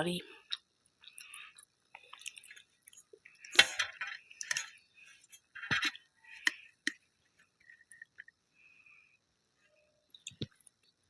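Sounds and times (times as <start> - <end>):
person chewing: 0.4 - 4.8.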